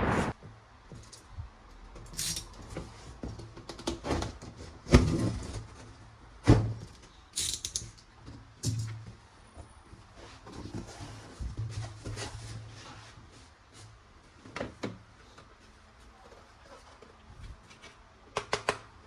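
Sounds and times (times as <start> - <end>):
loud burst: 0.0 - 0.4
plastic toy guns clicking and knocking: 7.4 - 8.9, 18.3 - 18.9.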